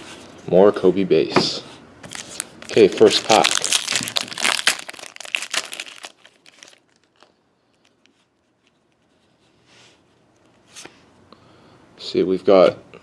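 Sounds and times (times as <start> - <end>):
card pack wrapper crinkling and tearing: 2.1 - 8.9.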